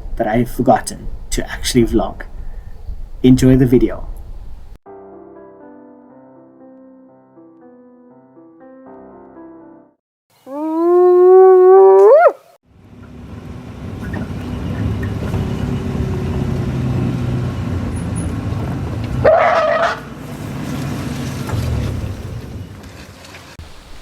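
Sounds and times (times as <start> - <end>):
low rumbling noise: 0.0 - 4.8, 23.6 - 24.0
animal howling: 10.5 - 12.5, 19.2 - 20.1
short loud animal call: 19.2 - 20.0.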